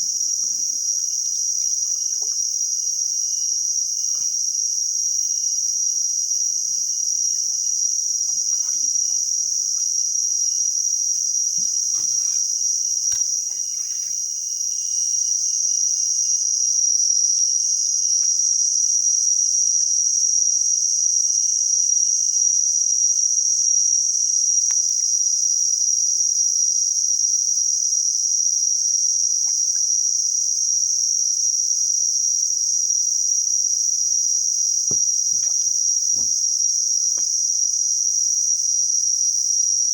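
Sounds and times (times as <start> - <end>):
faint rustles and knocks: 0.0 - 2.6, 34.8 - 37.5
insect chorus drone: 0.0 - 39.9.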